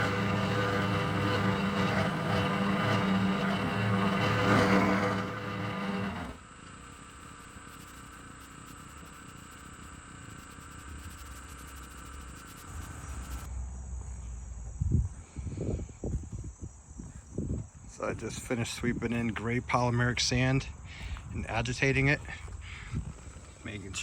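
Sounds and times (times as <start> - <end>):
small engine running: 0.0 - 13.5
crickets chirping: 6.4 - 24.0.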